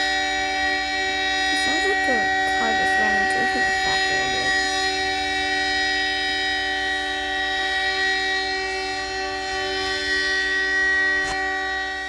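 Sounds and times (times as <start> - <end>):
steady alarm tone chord: 1.3 - 5.9.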